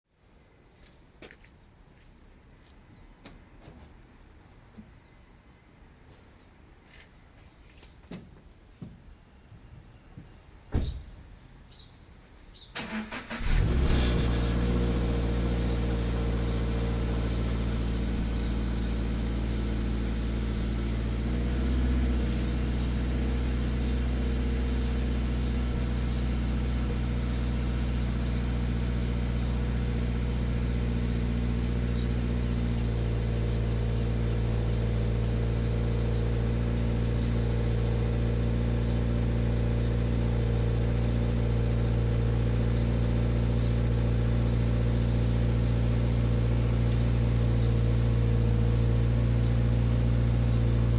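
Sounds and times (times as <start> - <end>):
car engine idling with rattle: 12.9 - 50.9.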